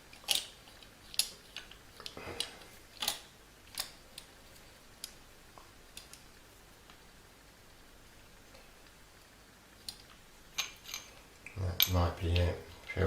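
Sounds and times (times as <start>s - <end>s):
small metal parts clicking: 0.1s - 4.3s, 9.9s - 11.2s.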